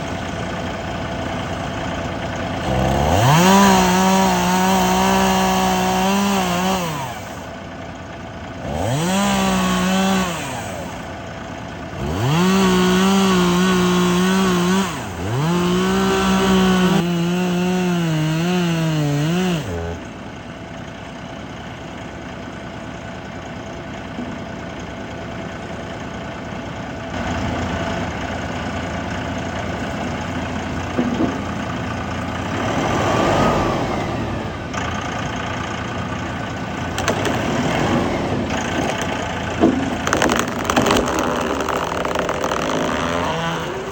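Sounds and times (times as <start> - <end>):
quiet engine running: 0.0 - 12.9, 19.5 - 43.9
chainsaw revving: 2.3 - 7.6, 8.5 - 20.2, 30.9 - 35.8, 36.4 - 43.9.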